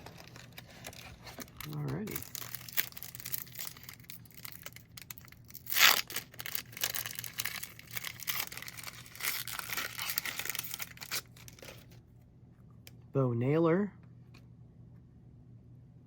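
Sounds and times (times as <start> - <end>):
card pack wrapper tearing and crinkling: 0.0 - 11.9.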